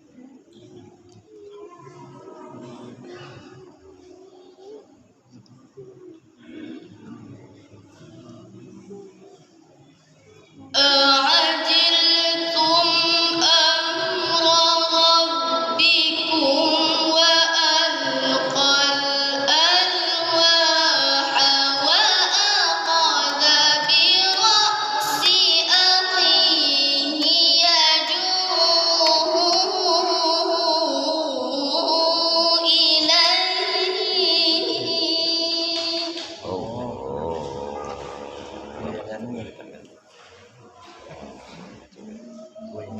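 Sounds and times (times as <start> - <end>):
person chanting recitation: 10.6 - 42.9.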